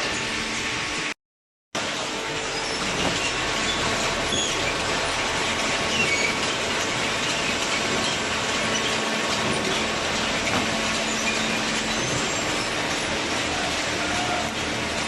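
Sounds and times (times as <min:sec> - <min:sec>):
baler mechanical din: 0:01.8 - 0:15.0.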